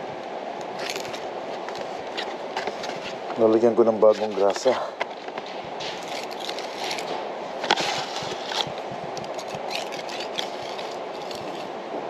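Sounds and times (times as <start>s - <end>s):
scraping grease: 4.2s - 11.7s.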